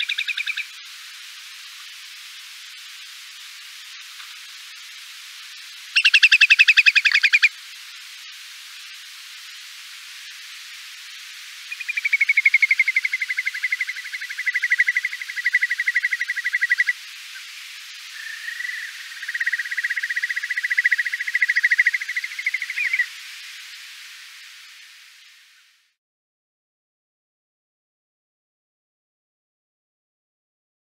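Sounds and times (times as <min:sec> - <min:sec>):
bird rippling trills: 0:00.0 - 0:00.8, 0:05.9 - 0:07.5, 0:18.1 - 0:23.2
steady hiss: 0:00.0 - 0:26.0.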